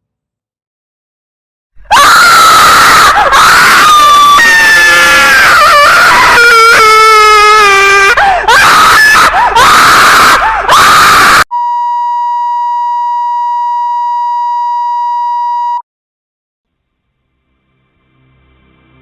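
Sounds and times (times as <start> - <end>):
distorted screaming: 1.9 - 11.5
steady beep tone: 11.5 - 15.8.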